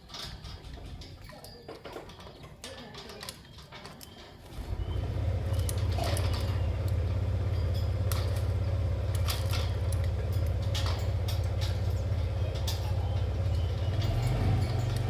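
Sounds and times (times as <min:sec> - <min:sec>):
faint clicks and rustles: 0:00.0 - 0:15.0
low motor hum with flutter: 0:04.5 - 0:15.0.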